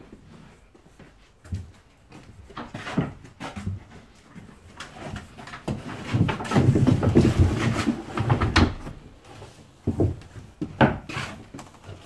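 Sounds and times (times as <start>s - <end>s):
wood bumping and rumbling: 2.4s - 12.0s.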